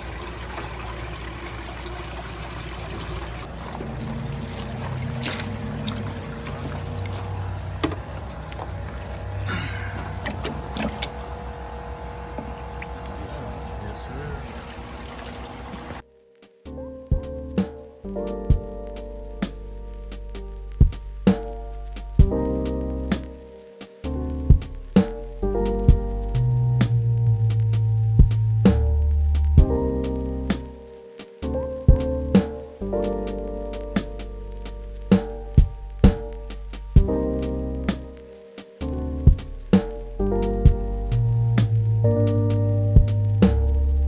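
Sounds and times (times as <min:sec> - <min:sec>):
low motor hum: 0:00.0 - 0:16.0, 0:39.3 - 0:44.0
water trickling and splashing: 0:00.0 - 0:16.0
bass line: 0:03.4 - 0:14.8, 0:16.7 - 0:23.5, 0:24.1 - 0:44.0
drum beat: 0:20.8 - 0:21.1, 0:22.2 - 0:22.4, 0:24.5 - 0:24.8, 0:31.9 - 0:32.1, 0:39.2 - 0:39.9, 0:43.0 - 0:43.2.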